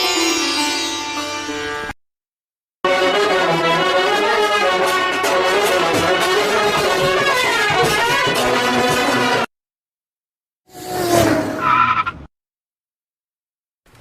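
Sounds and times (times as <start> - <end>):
brass music: 2.8 - 9.5.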